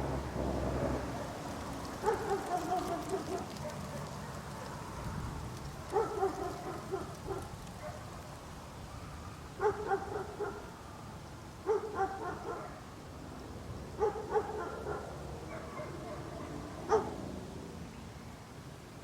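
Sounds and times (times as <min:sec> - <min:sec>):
small dog barking: 0:02.0 - 0:04.9, 0:05.9 - 0:08.1, 0:09.0 - 0:10.7, 0:11.6 - 0:12.8, 0:14.0 - 0:17.2.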